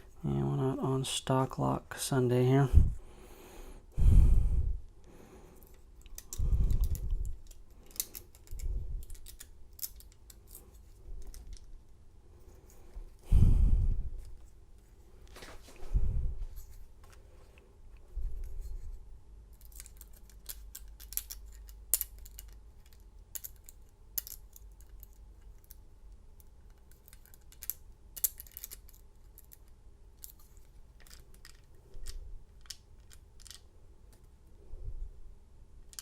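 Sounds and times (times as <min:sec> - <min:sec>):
lock picks clicking and scratching: 0:05.6 - 0:11.8, 0:19.5 - 0:25.8, 0:26.4 - 0:34.2, 0:35.8 - 0:36.0.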